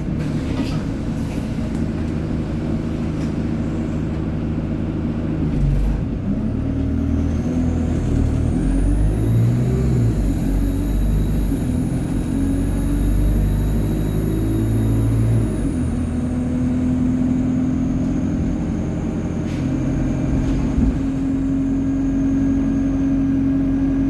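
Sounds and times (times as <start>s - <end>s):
bus diesel engine accelerating: 0.0s - 24.0s
high turbo whine: 7.9s - 24.0s.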